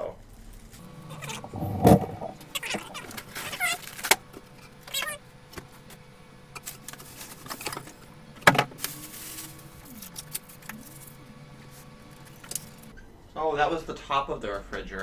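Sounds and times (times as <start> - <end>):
packaging rustling and scraping: 8.8 - 9.9.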